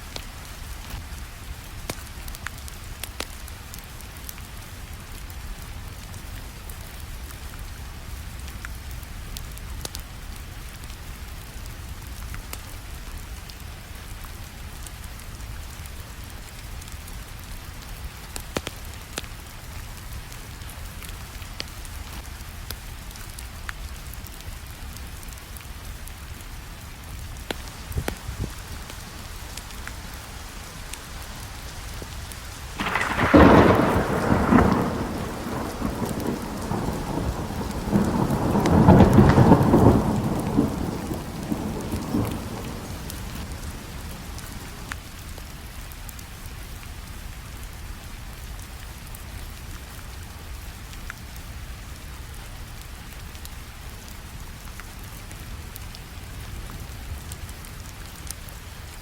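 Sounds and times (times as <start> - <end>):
steady rain: 0.0 - 59.0
thunder rumbling: 27.5 - 44.9.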